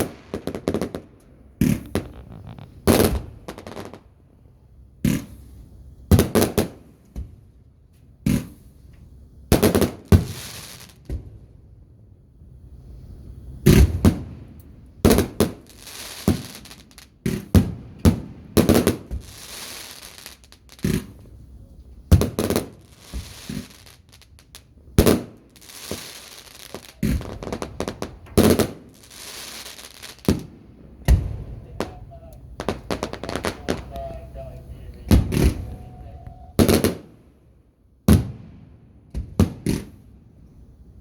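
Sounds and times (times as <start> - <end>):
fireworks bangs: 0.0 - 4.2, 5.0 - 7.4, 9.5 - 11.5, 13.0 - 37.4, 38.0 - 40.5
fireworks crackling hiss: 0.0 - 4.2, 8.2 - 11.5, 12.5 - 37.4.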